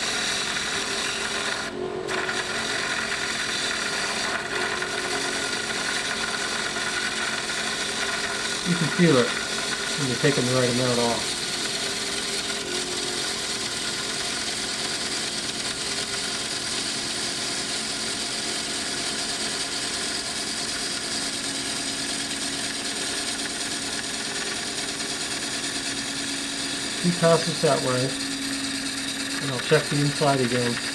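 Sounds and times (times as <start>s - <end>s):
hiss of lathe gouge cut: 0.0s - 6.5s, 8.1s - 11.7s, 25.6s - 30.9s
wood lathe humming: 0.0s - 30.9s.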